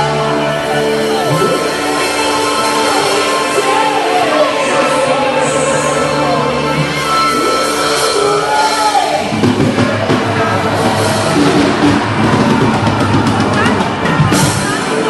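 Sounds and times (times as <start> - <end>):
electric guitar: 0.0 - 15.0
live rock band playing: 0.0 - 15.0
drum kit: 6.7 - 15.0.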